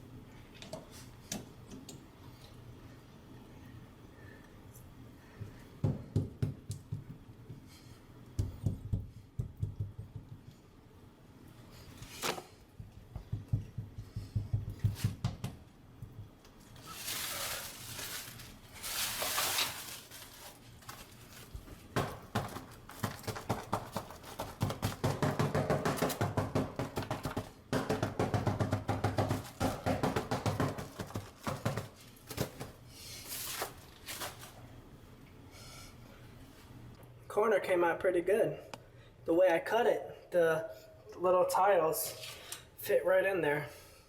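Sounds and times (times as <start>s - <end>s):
tiles knocking and tapping: 5.8s - 7.7s, 8.4s - 10.6s, 12.8s - 16.4s, 21.9s - 32.8s
scraping: 16.8s - 21.7s.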